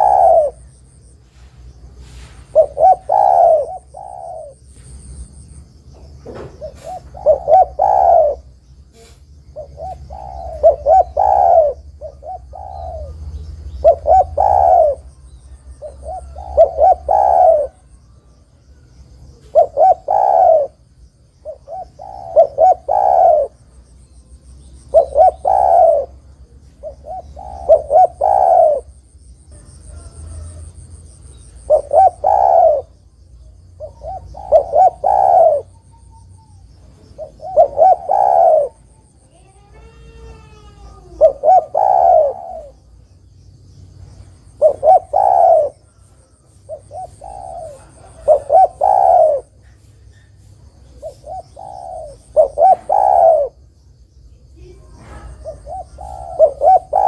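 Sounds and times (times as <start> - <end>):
dove cooing: 0.0 - 1.4, 2.0 - 5.1, 6.0 - 20.8, 21.4 - 23.7, 24.8 - 43.0, 44.4 - 53.7, 54.6 - 57.0
faint high chirping: 0.0 - 57.0.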